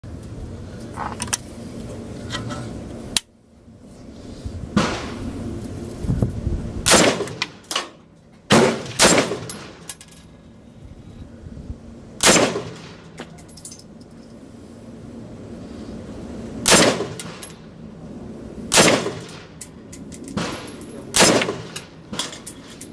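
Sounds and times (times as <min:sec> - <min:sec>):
rifle shots with ringing tail: 0:06.8 - 0:07.6, 0:08.5 - 0:09.9, 0:12.2 - 0:13.0, 0:16.6 - 0:17.6, 0:18.7 - 0:19.6, 0:20.4 - 0:22.3.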